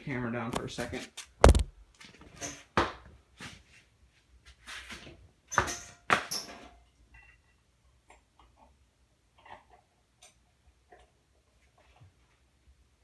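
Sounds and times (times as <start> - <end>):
handling knocks and scrapes: 0.5 - 2.4.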